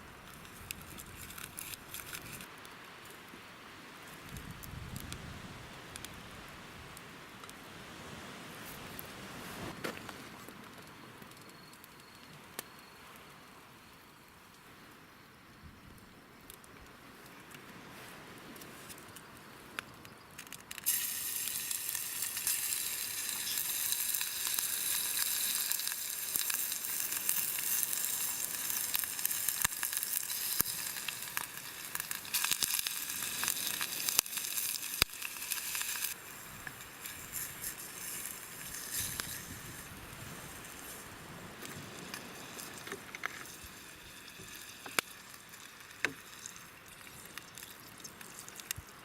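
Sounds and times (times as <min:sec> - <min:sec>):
campfire crackles: 0:00.0 - 0:15.1, 0:15.9 - 0:49.0
food sizzling in a pan: 0:20.8 - 0:39.9.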